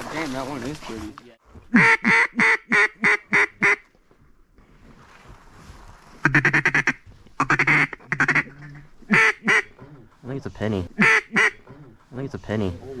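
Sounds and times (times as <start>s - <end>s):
duck call quacks: 1.7s - 3.8s, 6.2s - 9.9s, 11.0s - 11.8s.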